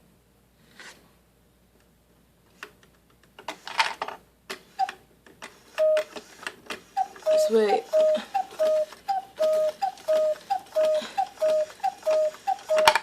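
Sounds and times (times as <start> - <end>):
cuckoo clock clicks: 4.7 - 13.0.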